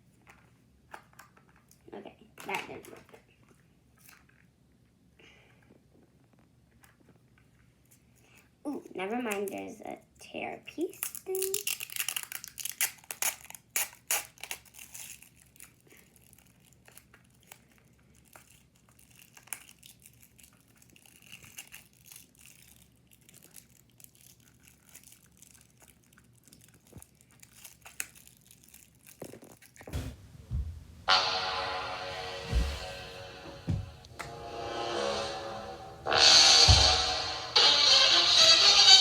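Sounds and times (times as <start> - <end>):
plastic cover crinkling and tearing: 10.8 - 30.0
low thumps: 29.9 - 37.6
music: 31.0 - 39.0.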